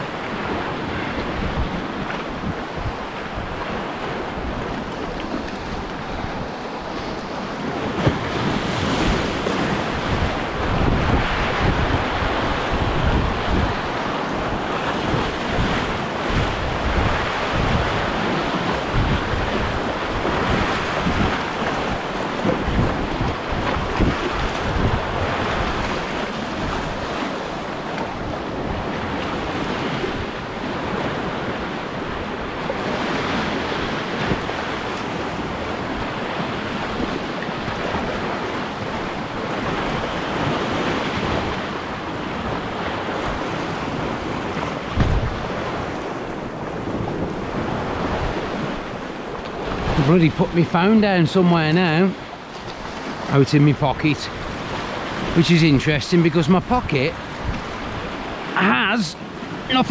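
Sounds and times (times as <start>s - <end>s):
waves washing against rocks: 0.0s - 59.9s
wind buffeting microphone: 0.0s - 59.9s.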